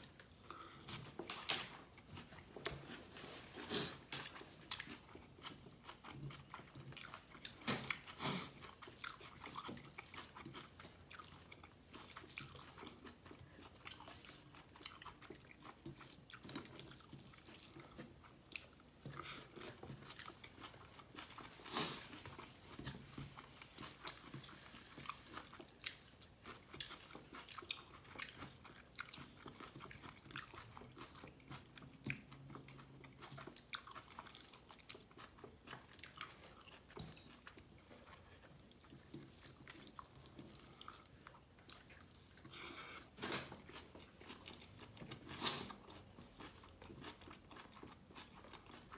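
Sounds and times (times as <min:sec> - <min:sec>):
food crunching: 0:00.0 - 0:48.9
person chewing food: 0:00.0 - 0:48.9.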